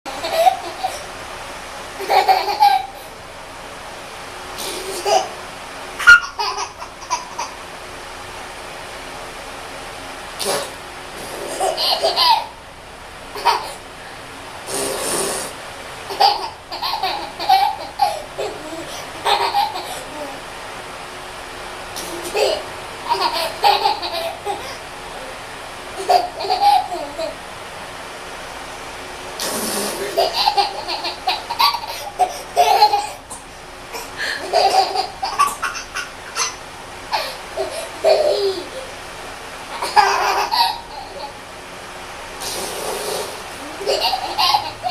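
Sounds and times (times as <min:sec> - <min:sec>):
baby laughing: 0:00.1 - 0:01.1, 0:02.0 - 0:03.1, 0:04.6 - 0:05.4, 0:06.0 - 0:07.6, 0:11.4 - 0:12.6, 0:13.4 - 0:13.8, 0:16.1 - 0:20.4, 0:22.0 - 0:24.8, 0:26.0 - 0:27.4, 0:29.9 - 0:33.4, 0:34.0 - 0:38.9, 0:39.7 - 0:41.4, 0:43.6 - 0:44.9
baby blowing raspberry: 0:04.6 - 0:05.0, 0:10.4 - 0:11.8, 0:14.6 - 0:15.6, 0:29.4 - 0:30.3, 0:42.4 - 0:43.9.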